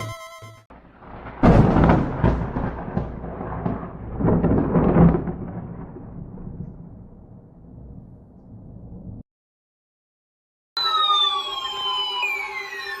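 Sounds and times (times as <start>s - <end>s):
thunder crack and rumble: 0.7s - 9.2s.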